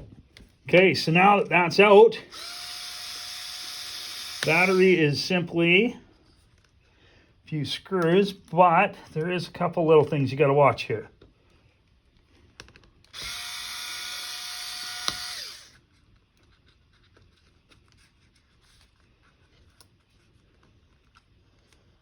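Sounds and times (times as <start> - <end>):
electric screwdriver motor whine: 2.3 - 5.0, 13.1 - 15.8.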